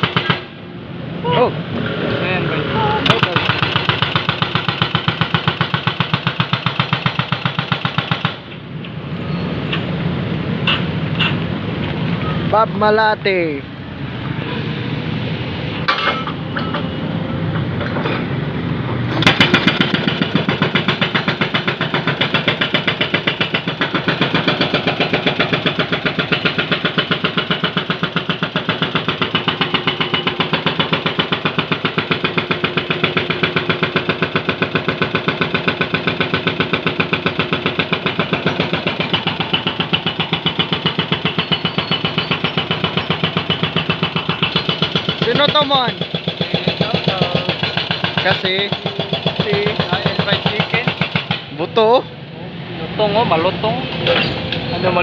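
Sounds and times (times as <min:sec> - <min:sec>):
hydraulic breaker hammering pavement: 0:00.0 - 0:00.6, 0:03.0 - 0:08.6, 0:19.1 - 0:51.7
excavator engine running: 0:02.6 - 0:09.0, 0:09.6 - 0:55.0.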